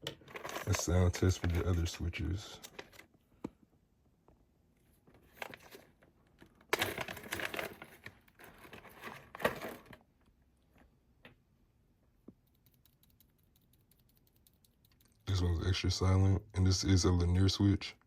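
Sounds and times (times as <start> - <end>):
rustling and crinkling handling noise: 0.0 - 3.4, 4.8 - 11.0.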